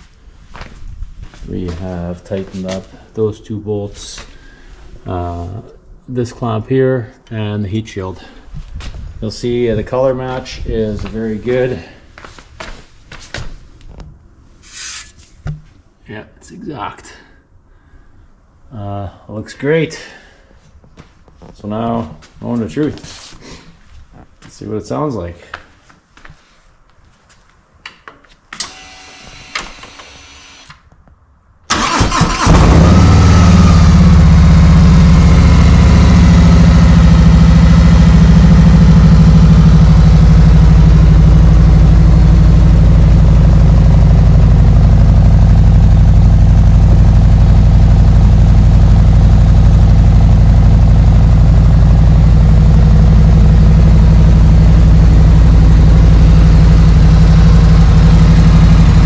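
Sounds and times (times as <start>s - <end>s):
motorcycle engine deep idle: 32.6s - 59.0s.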